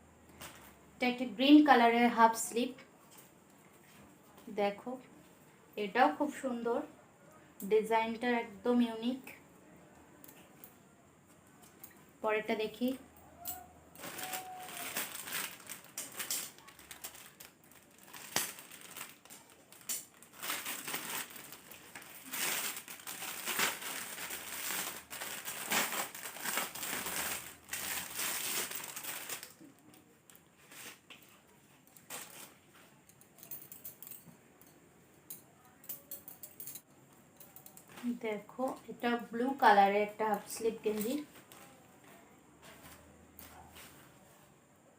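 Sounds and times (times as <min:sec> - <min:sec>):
plastic packaging crinkling: 0:13.9 - 0:31.0, 0:32.0 - 0:32.6.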